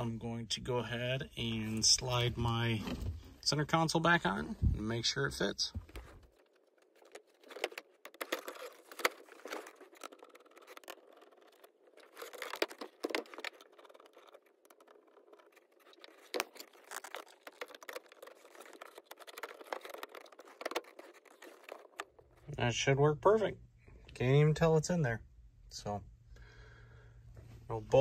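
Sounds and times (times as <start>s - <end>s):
plastic console scraping and rattling: 1.4s - 22.6s.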